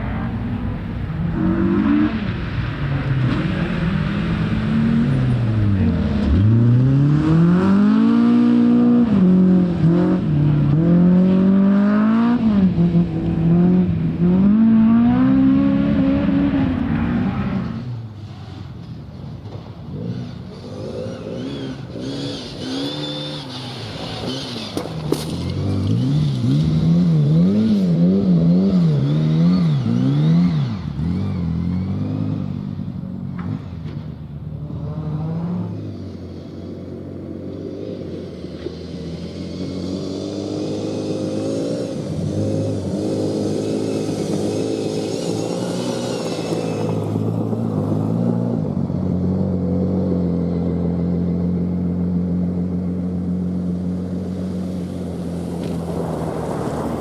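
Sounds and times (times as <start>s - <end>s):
rally car engine revving: 0.0s - 18.0s, 19.9s - 57.0s.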